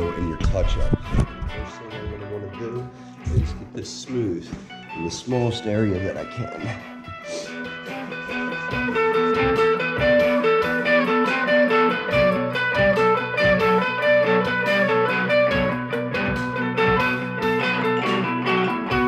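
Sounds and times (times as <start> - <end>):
bass line: 0.0 - 2.5, 3.2 - 3.7
guitar tune with steady beat: 0.0 - 19.0.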